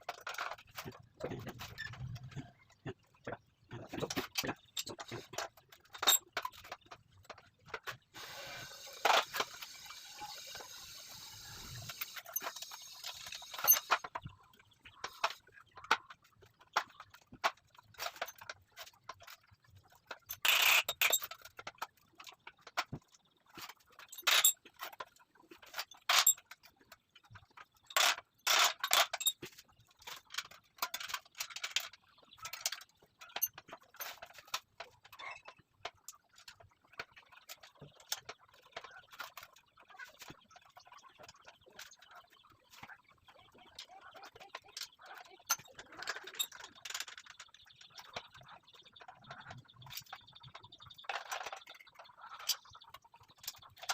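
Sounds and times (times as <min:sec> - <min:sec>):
metal parts scraping: 0:03.8 - 0:14.2, 0:20.1 - 0:21.6, 0:23.6 - 0:24.6, 0:27.8 - 0:29.5
metal parts knocking and clinking: 0:03.8 - 0:16.1, 0:20.1 - 0:25.0, 0:25.6 - 0:26.6, 0:27.2 - 0:36.6, 0:44.2 - 0:47.8.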